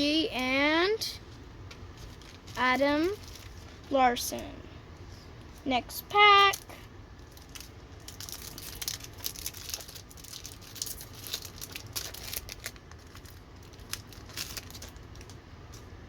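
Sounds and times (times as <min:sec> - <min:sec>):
wrapper tearing and crinkling: 0:02.0 - 0:03.8, 0:06.5 - 0:15.8.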